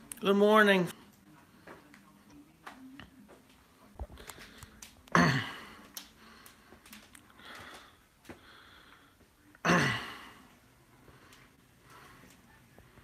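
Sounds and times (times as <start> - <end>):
soft breath: 5.6 - 9.5, 10.2 - 13.0.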